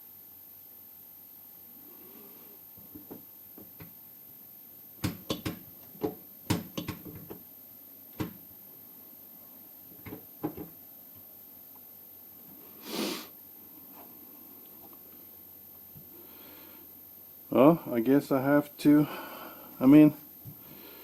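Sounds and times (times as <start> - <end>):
plastic console knocks and clicks: 5.0 - 7.4.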